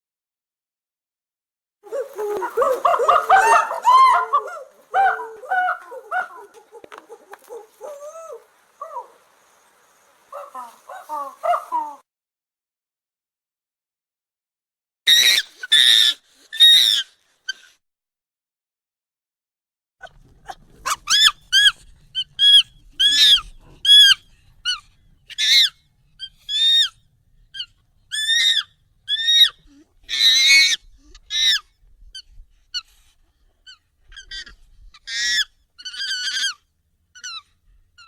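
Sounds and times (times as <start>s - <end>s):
harsh monkey call: 1.9s - 9.3s, 10.3s - 12.0s, 15.1s - 17.7s, 20.0s - 32.9s, 33.6s - 38.0s
high monkey squeaks and chirps: 15.1s - 17.7s, 20.8s - 32.9s, 33.6s - 36.6s, 37.2s - 37.5s.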